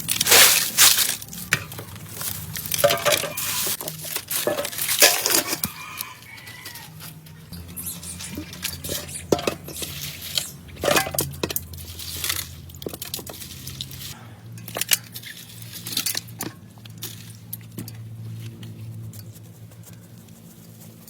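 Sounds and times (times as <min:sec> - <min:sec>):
pots and dishes clattering: 0:02.6 - 0:05.8, 0:08.3 - 0:10.0, 0:10.7 - 0:11.8.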